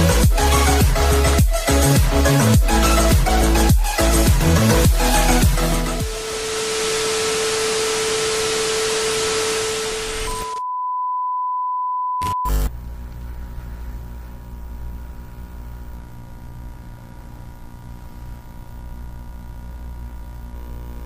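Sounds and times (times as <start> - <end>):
static hiss: 4.8 - 10.6
steady tone: 4.8 - 10.7
clean beep: 6.0 - 12.5.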